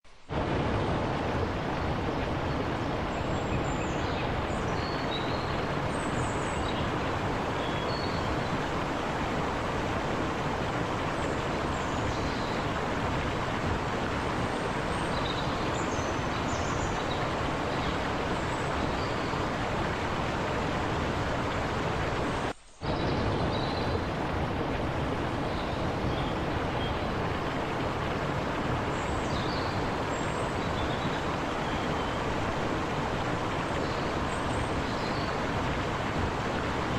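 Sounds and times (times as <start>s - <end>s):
river babbling over rocks: 0.2s - 36.9s.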